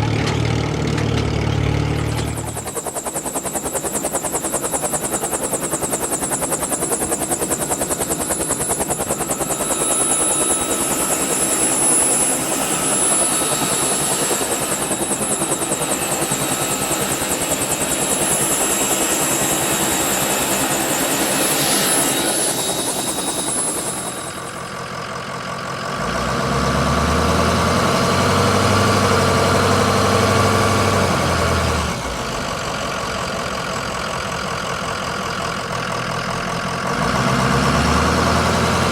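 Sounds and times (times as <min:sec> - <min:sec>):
vehicle engine deep hum: 0:00.0 - 0:02.5
turbine whine: 0:00.0 - 0:25.3, 0:26.0 - 0:36.0
helicopter rotor beating: 0:01.1 - 0:25.3, 0:27.1 - 0:36.3.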